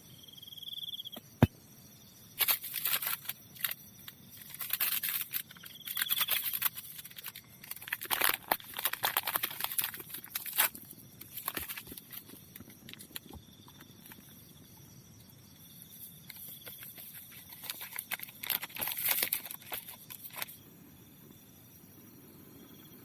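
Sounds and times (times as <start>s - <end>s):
crisp rustling and clicks: 2.4s - 14.3s, 16.2s - 20.6s.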